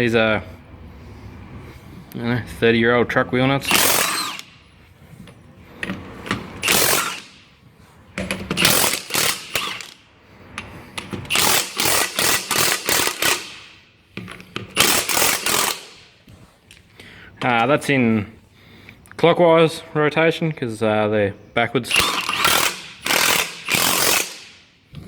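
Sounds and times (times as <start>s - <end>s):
impact wrench rattling: 3.6s - 4.6s, 5.8s - 7.5s, 8.2s - 10.0s, 10.6s - 16.1s, 21.9s - 25.0s.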